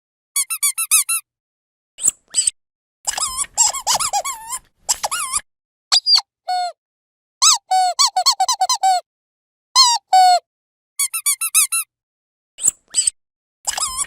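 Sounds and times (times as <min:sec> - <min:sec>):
dog squeaky toy squeaking: 0:00.4 - 0:01.2, 0:03.1 - 0:06.7, 0:07.4 - 0:09.0, 0:09.8 - 0:10.4, 0:11.0 - 0:11.9, 0:13.7 - 0:14.0.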